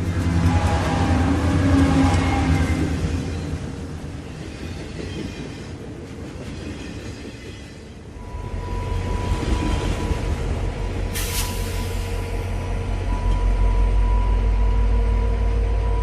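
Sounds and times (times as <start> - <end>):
locomotive rumbling: 0.0 - 16.0
air hiss: 11.1 - 12.4.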